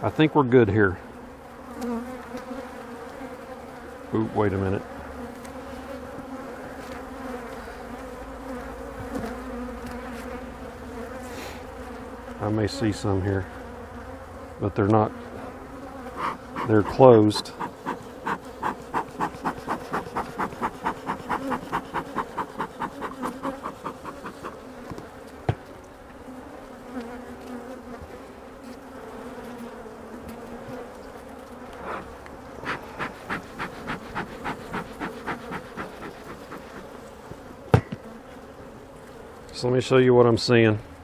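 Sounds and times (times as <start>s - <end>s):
bees buzzing: 4.8s - 39.4s
soft pulses: 16.1s - 24.7s, 32.6s - 37.0s.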